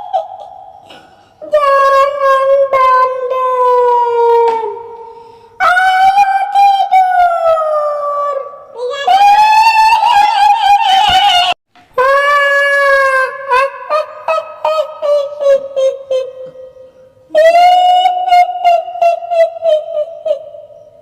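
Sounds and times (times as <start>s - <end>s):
woman wailing: 0.0s - 0.8s, 7.0s - 16.5s.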